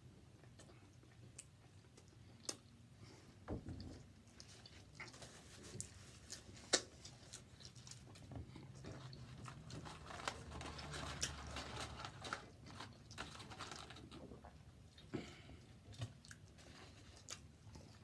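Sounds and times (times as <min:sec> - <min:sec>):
chewing with wet mouth clicks: 0:00.4 - 0:02.8, 0:15.9 - 0:16.6.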